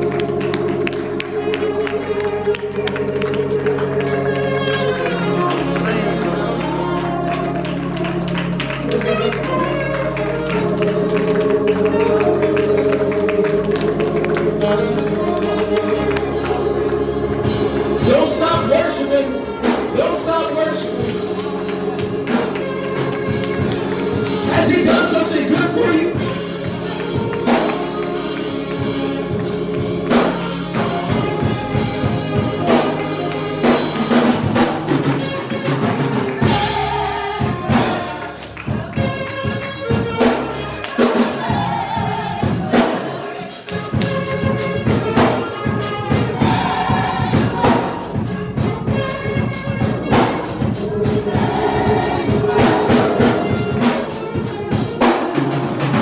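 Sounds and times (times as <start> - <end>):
choir singing: 0.0 - 56.0
percussion beat: 0.0 - 56.0.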